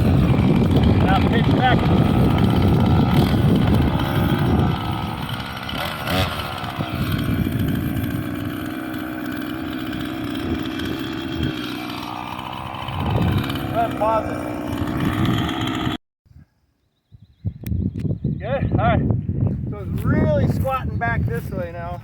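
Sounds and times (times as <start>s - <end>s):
chainsaw cutting: 0.0s - 16.0s.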